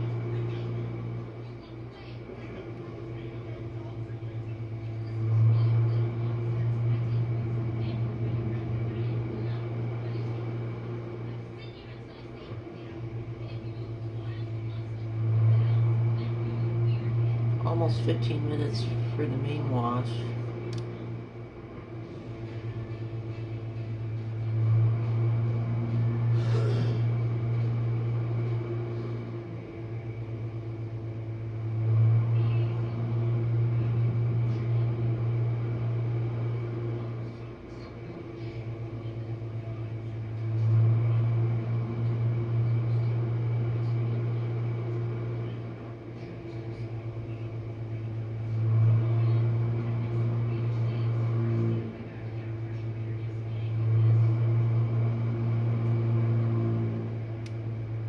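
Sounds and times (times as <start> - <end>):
dishwasher pump hum: 0.0 - 58.0.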